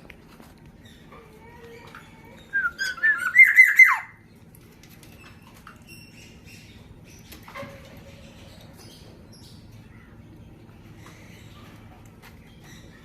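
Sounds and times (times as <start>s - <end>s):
oriole whistled notes: 2.5s - 4.1s.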